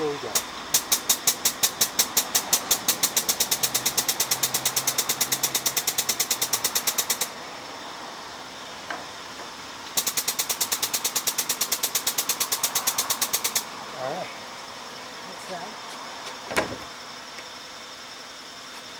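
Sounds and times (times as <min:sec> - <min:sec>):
grease gun clicking: 0:00.3 - 0:07.3, 0:10.0 - 0:13.7.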